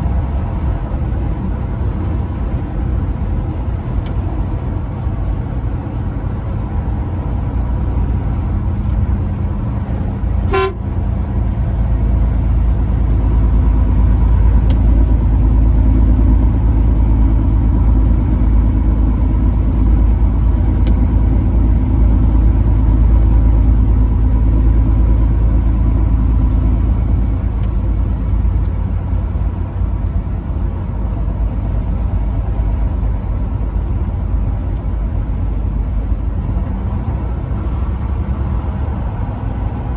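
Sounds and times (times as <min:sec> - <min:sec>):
truck engine and road rumble: 0:00.0 - 0:39.9
truck horn toot: 0:10.2 - 0:11.3.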